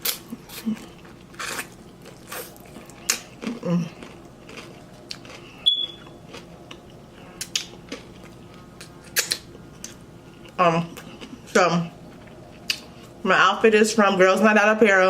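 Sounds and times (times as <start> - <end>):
chewing and crunching snack: 0.0 - 13.2
high ringing tone: 5.6 - 6.2.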